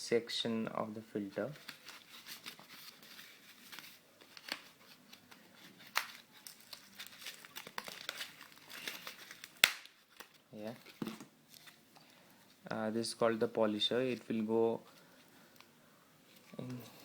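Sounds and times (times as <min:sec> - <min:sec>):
packaging crinkling: 0:01.5 - 0:11.8.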